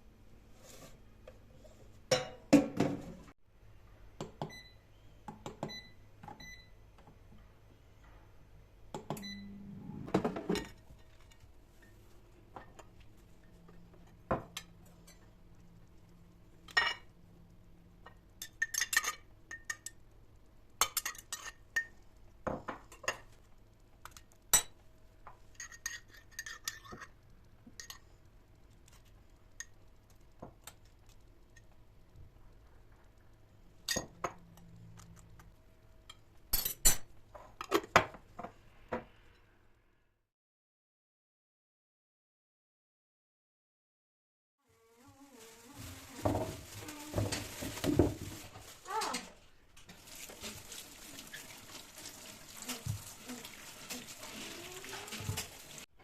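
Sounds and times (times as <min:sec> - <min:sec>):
dishes and cutlery clinking: 0:02.1 - 0:03.2, 0:18.1 - 0:20.0, 0:20.8 - 0:23.3, 0:25.5 - 0:28.0, 0:36.0 - 0:38.0.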